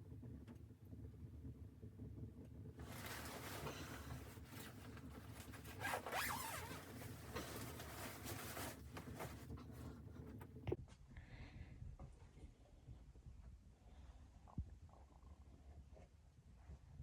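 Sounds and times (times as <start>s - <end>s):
rasping scratchy handling noise: 2.8s - 10.0s.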